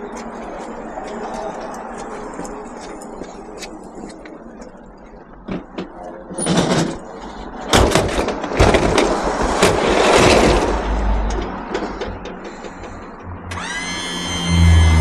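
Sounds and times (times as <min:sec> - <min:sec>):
metal clattering and banging: 0:05.4 - 0:13.4.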